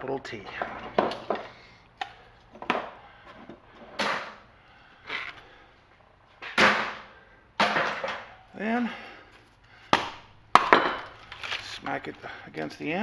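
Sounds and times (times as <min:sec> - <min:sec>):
heavy metal parts clunking on workbench: 0:00.5 - 0:01.5, 0:07.6 - 0:08.4, 0:10.5 - 0:11.2.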